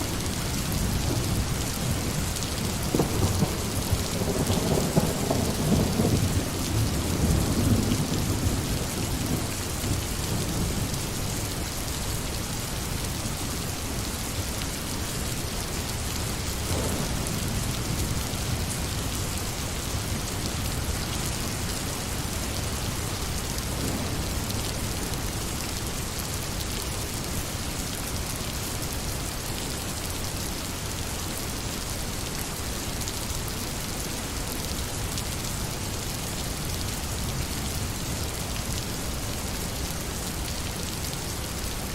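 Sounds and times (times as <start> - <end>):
thunder rumble: 0.0 - 11.5, 15.9 - 27.6
heavy rain falling: 0.0 - 41.9.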